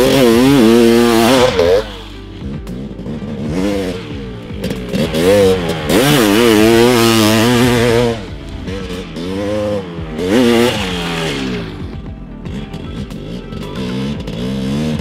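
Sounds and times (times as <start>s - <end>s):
two-stroke motorcycle engine revving: 0.0s - 15.0s.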